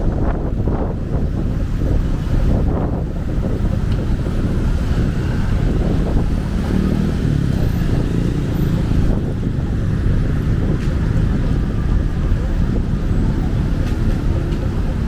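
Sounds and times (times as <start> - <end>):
dense street traffic rumble: 0.0 - 15.0.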